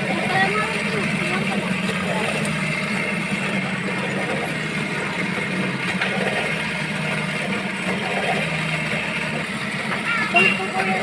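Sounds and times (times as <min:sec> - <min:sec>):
motor humming steadily: 0:00.0 - 0:11.0.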